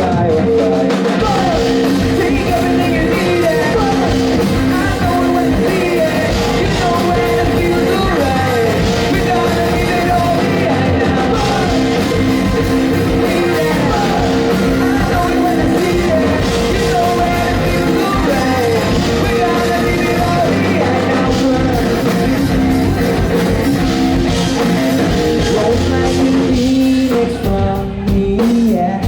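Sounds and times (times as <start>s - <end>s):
rock band playing live: 0.0s - 29.0s
vocal line: 0.0s - 29.0s.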